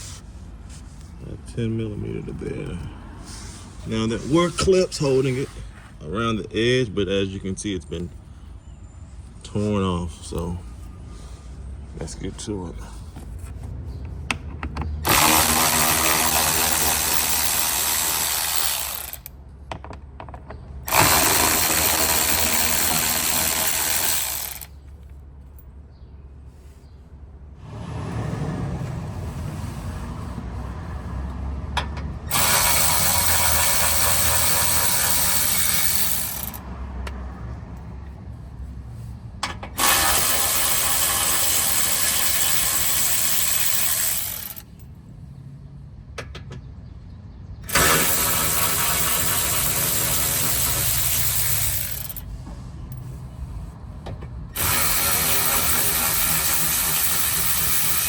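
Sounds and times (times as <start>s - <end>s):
cordless ratchet spinning: 15.0s - 19.3s, 20.9s - 24.7s, 32.3s - 36.6s, 39.8s - 44.7s, 47.7s - 52.3s, 54.6s - 58.0s.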